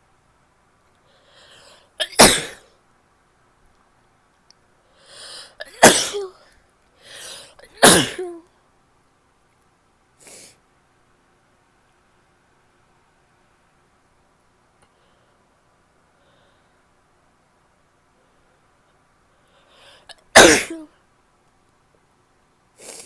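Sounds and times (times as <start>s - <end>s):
woman sneezing wetly: 2.0s - 2.6s, 5.6s - 6.4s, 7.6s - 8.4s, 20.3s - 20.9s.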